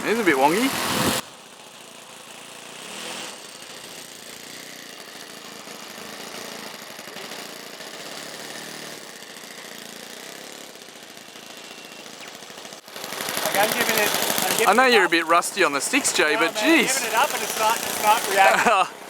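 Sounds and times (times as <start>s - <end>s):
model plane propeller buzzing: 0.0s - 19.0s.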